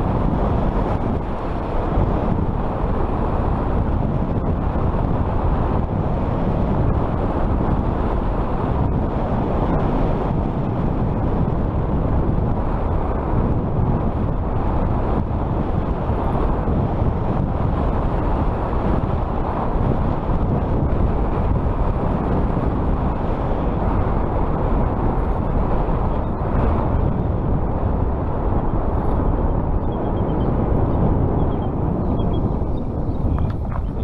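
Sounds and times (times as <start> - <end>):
wind buffeting microphone: 0.0 - 34.0.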